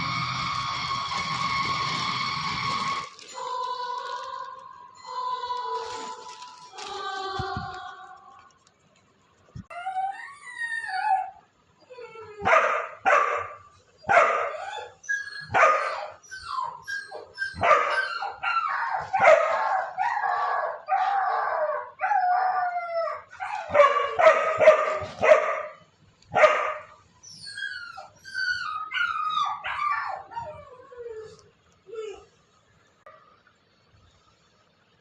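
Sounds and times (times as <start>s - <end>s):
dog barking: 12.4s - 14.8s, 15.5s - 16.1s, 17.6s - 18.2s, 19.1s - 21.1s, 23.5s - 27.0s
dog howling: 14.3s - 25.6s.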